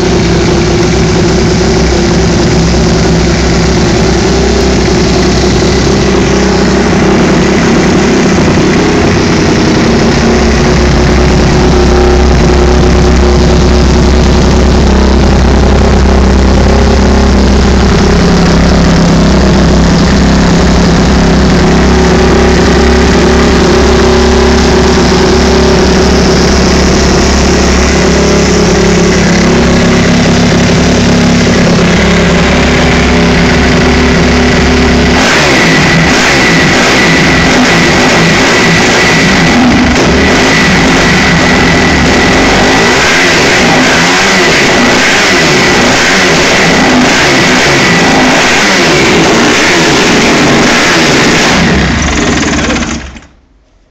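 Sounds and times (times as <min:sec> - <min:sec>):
motorcycle engine running loudly: 0:00.0 - 0:53.9.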